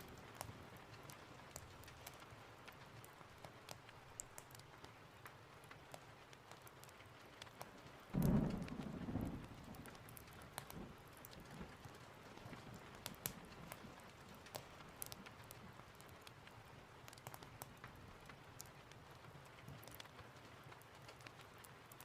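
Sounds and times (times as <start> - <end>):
sharp crackles and ticks: 0.0 - 22.0
steady rain: 0.0 - 22.0
low thunder clap: 8.2 - 10.0.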